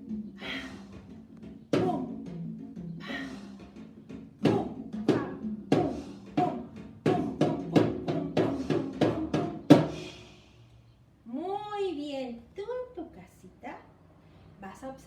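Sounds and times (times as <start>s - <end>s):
hand drum strokes: 0.0s - 10.3s.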